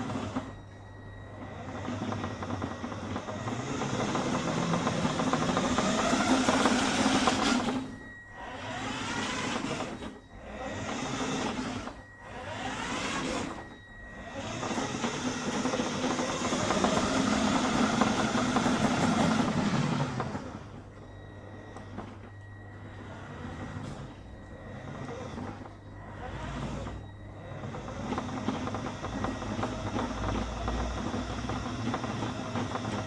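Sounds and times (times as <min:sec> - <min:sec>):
toy car electric motor whine: 0:00.0 - 0:00.6, 0:01.3 - 0:33.0.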